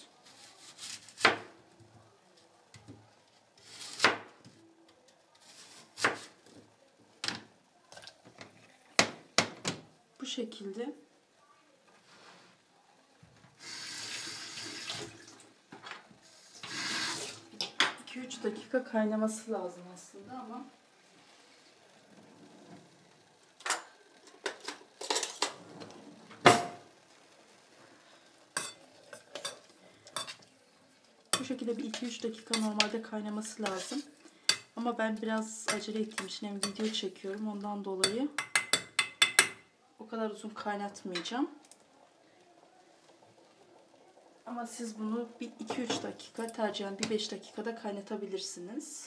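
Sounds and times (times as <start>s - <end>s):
utensils clinking against a pot: 28.6s - 30.5s, 31.3s - 34.8s, 35.6s - 37.1s, 38.0s - 39.7s.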